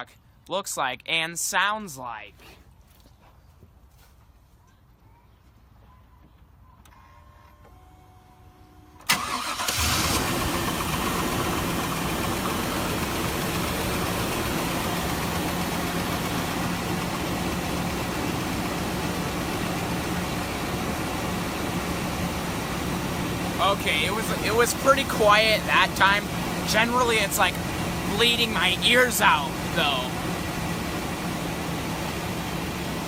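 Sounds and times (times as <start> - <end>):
truck engine cranking: 9.0 - 32.2
truck engine idling: 9.0 - 33.0.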